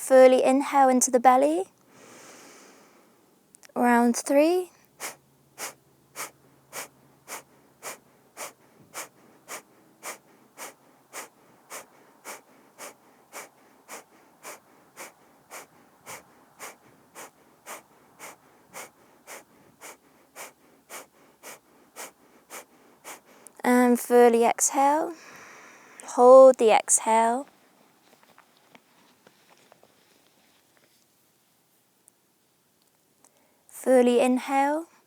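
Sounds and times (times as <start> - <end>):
woman breathing sharply: 1.9 - 3.2, 4.7 - 23.6, 25.1 - 26.1.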